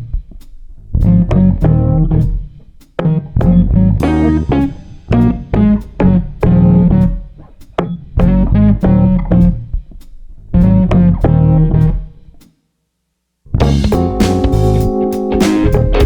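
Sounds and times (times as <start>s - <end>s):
drums: 0.0s - 12.6s, 13.5s - 16.0s
plucked guitar music: 3.0s - 9.5s, 13.6s - 16.0s.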